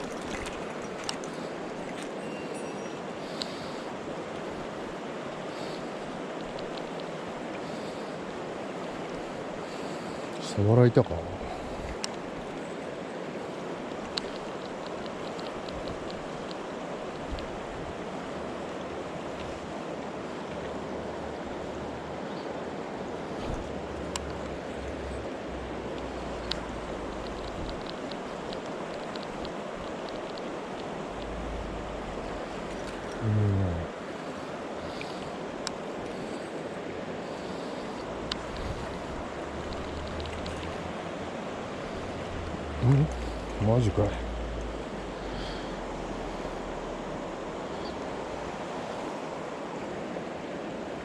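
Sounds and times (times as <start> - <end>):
faint clicks: 0.0 - 2.1, 3.3 - 3.6, 6.4 - 7.7, 11.9 - 12.2, 13.9 - 16.6, 24.0 - 25.0, 25.9 - 31.4, 34.9 - 36.2, 37.4 - 40.9
stream water rushing: 0.0 - 51.0
low vocal grunt: 33.2 - 34.0, 42.7 - 43.3.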